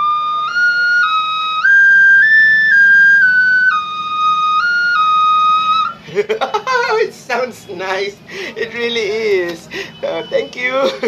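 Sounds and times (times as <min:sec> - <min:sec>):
ocarina tune: 0:00.0 - 0:11.0.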